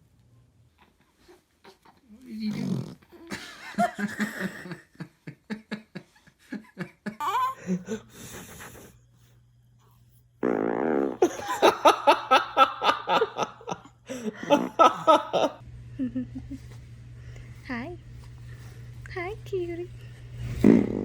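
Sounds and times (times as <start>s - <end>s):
baby fart: 2.5s - 3.1s, 10.4s - 11.3s, 20.5s - 21.0s
people laughing: 3.3s - 8.9s, 11.2s - 16.6s.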